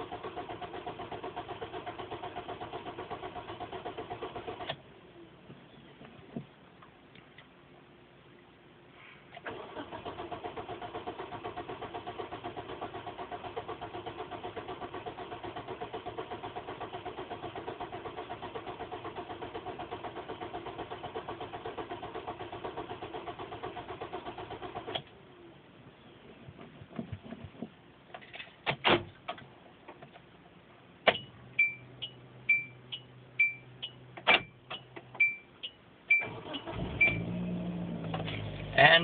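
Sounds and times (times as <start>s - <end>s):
car starter motor cranking: 0.0s - 4.8s, 9.4s - 25.1s, 36.1s - 39.0s.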